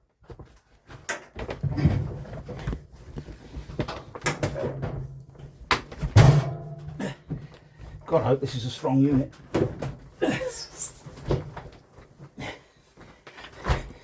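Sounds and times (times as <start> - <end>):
knocks and thuds on tumble dryer: 6.0 - 7.5.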